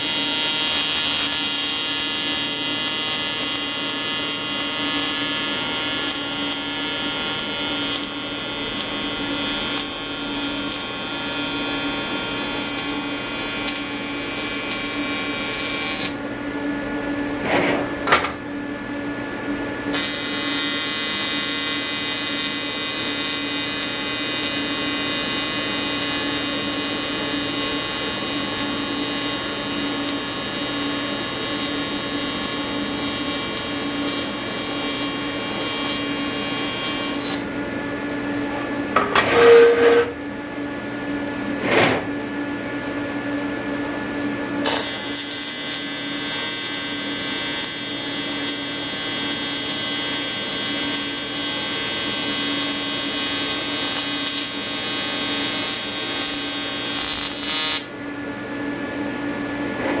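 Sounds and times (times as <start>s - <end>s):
welding arc buzzing: 0.0s - 16.2s, 19.9s - 37.5s, 44.6s - 58.0s.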